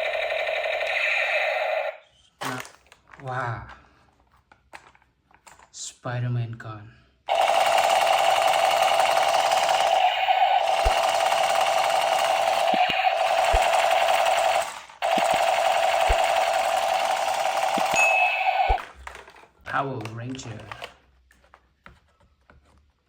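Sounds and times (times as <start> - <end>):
toy gun buzzing rattle: 0.0 - 2.0, 7.3 - 18.9.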